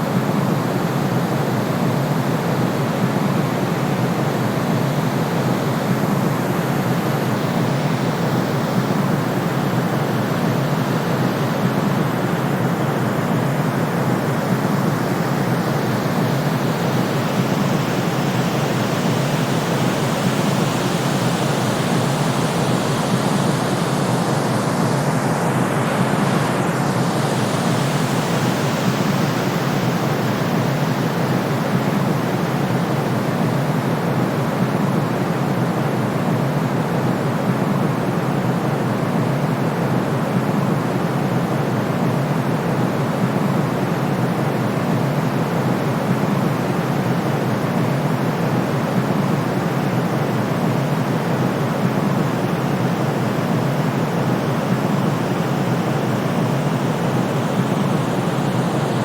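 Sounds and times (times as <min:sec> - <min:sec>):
steady low white noise: 0:00.0 - 0:59.0.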